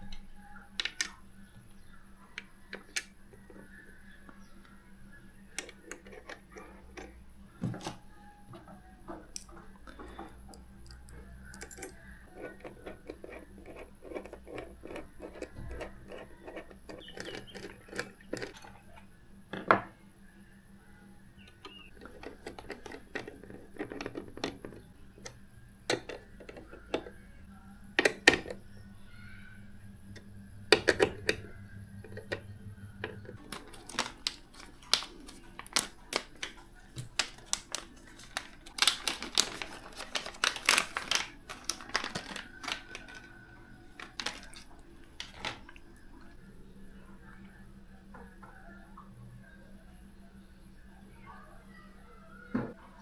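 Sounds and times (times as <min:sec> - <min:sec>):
small hard parts clattering: 0:08.6 - 0:19.8, 0:21.7 - 0:27.1, 0:33.0 - 0:46.2.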